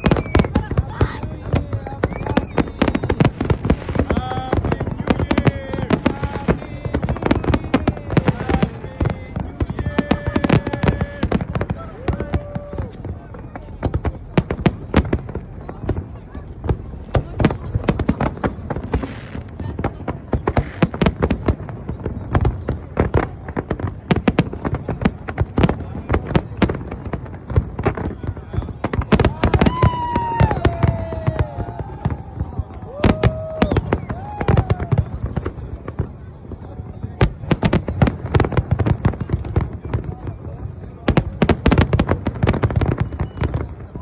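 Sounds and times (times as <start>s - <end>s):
crowd calling out: 0.0s - 13.5s, 28.0s - 40.1s
fireworks bangs and crackles: 0.0s - 44.0s.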